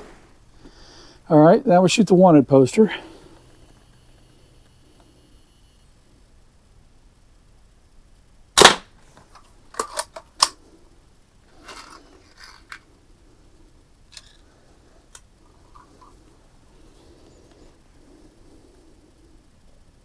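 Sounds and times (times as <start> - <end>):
bb gun firing crack: 8.6 - 9.2
gun handling noise: 8.6 - 10.6, 11.5 - 12.9, 14.1 - 14.5.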